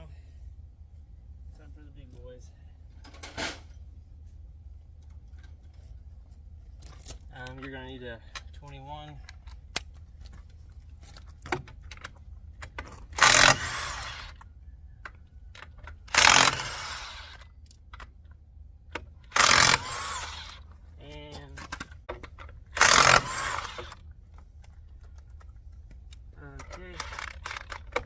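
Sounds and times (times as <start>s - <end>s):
impact wrench bursts: 13.0s - 14.4s, 16.0s - 17.5s, 19.3s - 20.7s, 22.7s - 24.0s, 26.8s - 28.0s.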